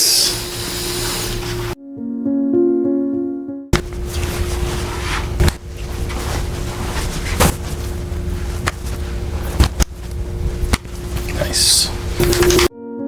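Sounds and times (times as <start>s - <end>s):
faint steady hum: 3.8s - 12.7s
steady low rumble: 3.8s - 12.7s.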